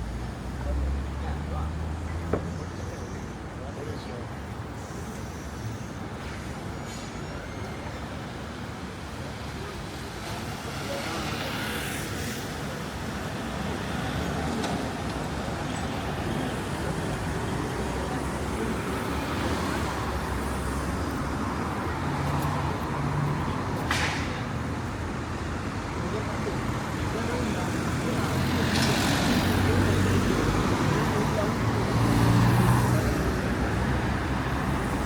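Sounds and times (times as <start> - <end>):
people's voices: 0.0 - 35.0
motor traffic running past: 27.1 - 35.0.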